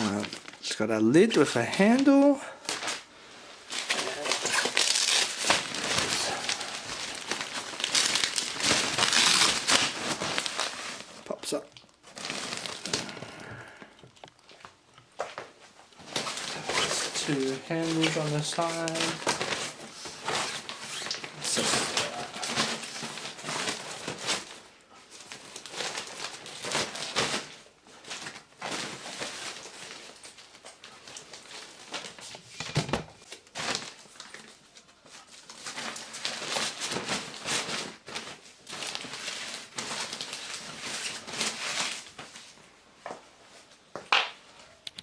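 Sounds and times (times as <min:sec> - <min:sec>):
storage basket rustling and crinkling: 0:01.5 - 0:13.4, 0:14.4 - 0:42.7.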